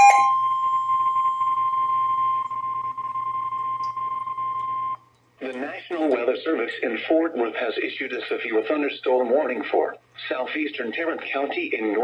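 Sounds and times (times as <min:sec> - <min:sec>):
steady alarm beep: 0:00.0 - 0:05.0
faint radio hiss: 0:04.4 - 0:12.0.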